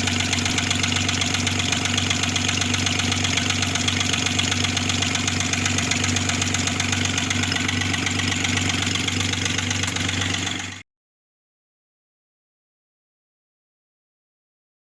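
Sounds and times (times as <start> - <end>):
car engine running with knock: 0.0 - 10.8.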